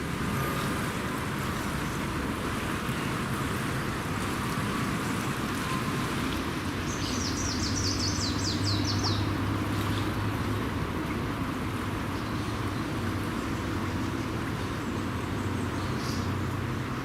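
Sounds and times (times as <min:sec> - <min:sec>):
songbird trill: 0:06.8 - 0:09.4.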